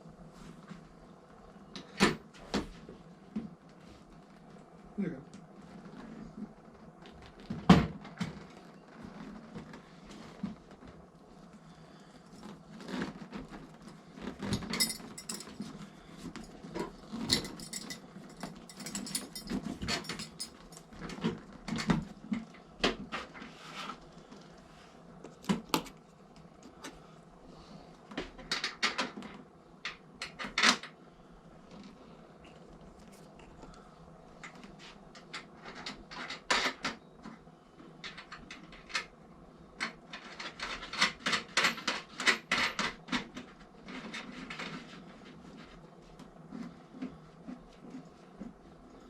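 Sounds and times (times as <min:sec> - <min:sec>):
metal tools clicking and rattling: 0:14.4 - 0:15.8, 0:16.4 - 0:20.9.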